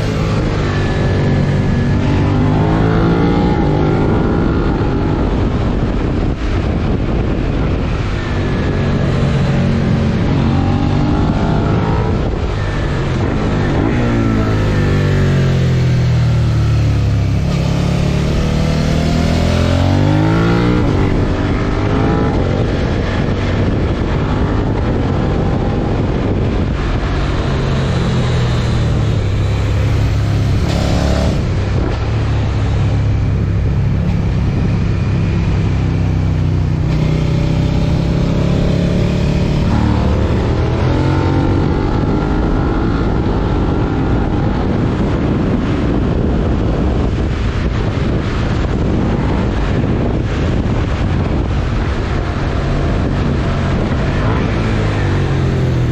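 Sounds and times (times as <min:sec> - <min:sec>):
motorcycle engine revving: 0:00.0 - 0:55.9
wind noise: 0:00.0 - 0:55.9.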